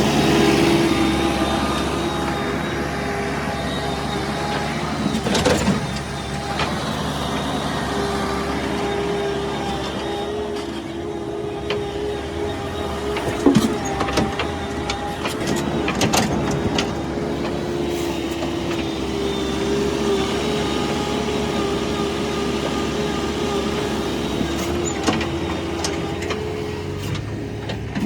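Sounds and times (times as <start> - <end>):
vehicle engine running: 0.0 - 28.0.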